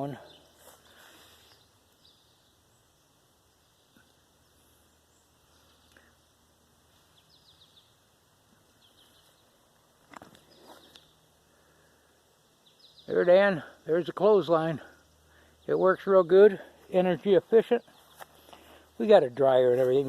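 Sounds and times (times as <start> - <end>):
faint high bird chirps: 6.9 - 9.6.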